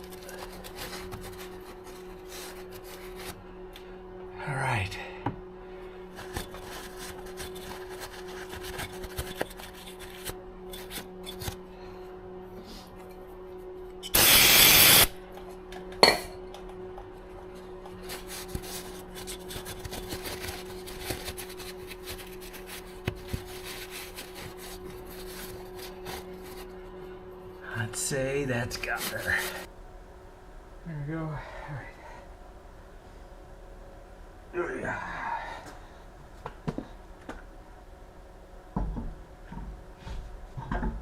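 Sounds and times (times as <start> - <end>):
rubbing and scraping on car parts: 0.0 - 3.4, 6.2 - 11.5, 18.0 - 26.8, 28.8 - 29.7
steady low hum: 0.0 - 41.0
loud hiss: 14.1 - 15.2.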